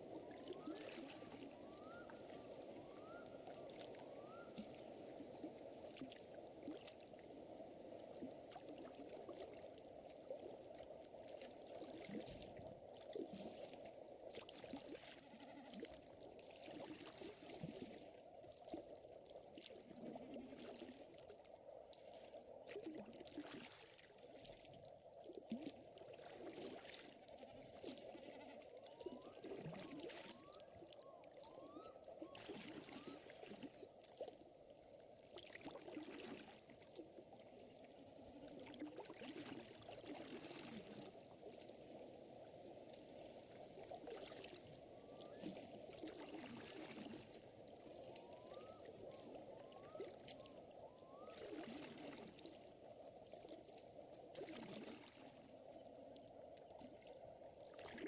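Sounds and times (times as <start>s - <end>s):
lake water washing: 0.0s - 15.2s, 29.0s - 56.1s.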